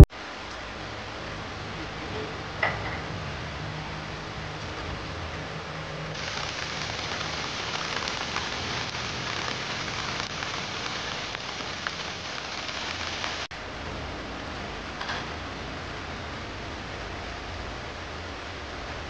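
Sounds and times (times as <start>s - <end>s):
rain falling: 6.1s - 13.5s.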